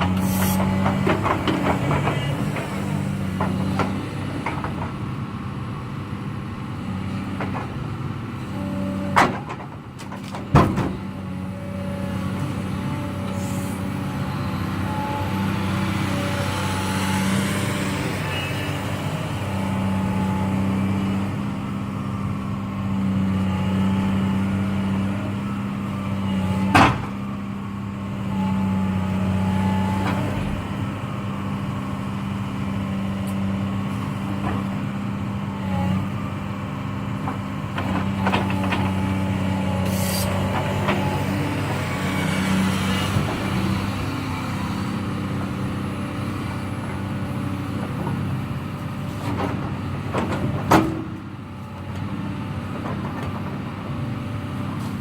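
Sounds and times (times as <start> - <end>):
excavator diesel engine: 0.0 - 55.0
faint hydraulic whine: 0.1 - 3.1, 13.2 - 19.0, 39.6 - 45.0.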